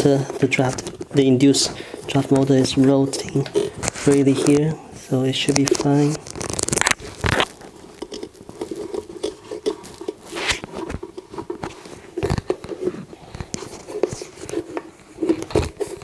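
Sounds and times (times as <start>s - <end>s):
clicks and scrapes of handled metal part: 0.0s - 4.7s.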